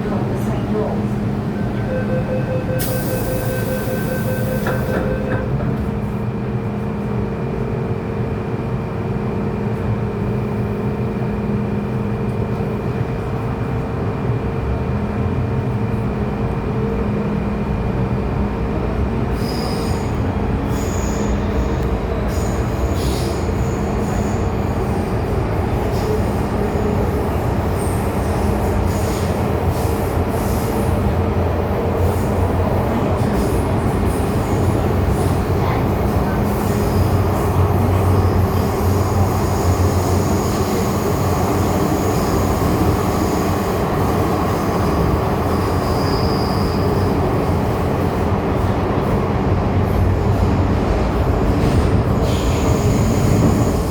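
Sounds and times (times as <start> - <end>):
train wheels rumbling on rail: 0.0 - 53.9
high-pitched wheel squeal: 45.7 - 47.1.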